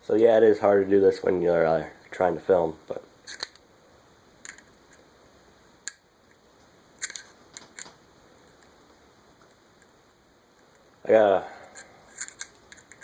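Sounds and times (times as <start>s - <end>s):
fishing reel being handled: 11.7s - 13.0s.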